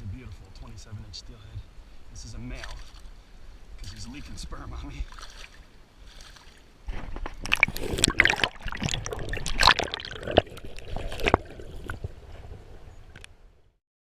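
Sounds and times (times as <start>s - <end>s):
fish thrashing in water: 5.0s - 13.2s.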